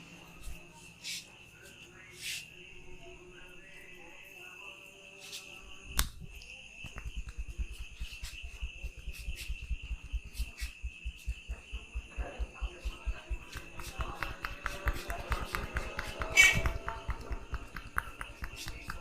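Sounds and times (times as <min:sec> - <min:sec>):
percussive massage strokes: 0:06.8 - 0:19.0.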